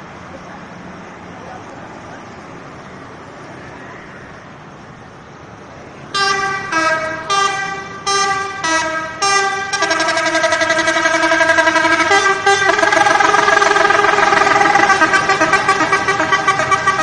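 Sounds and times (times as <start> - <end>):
road traffic noise: 0.0 - 17.0
musical air horn blasts: 6.2 - 17.0.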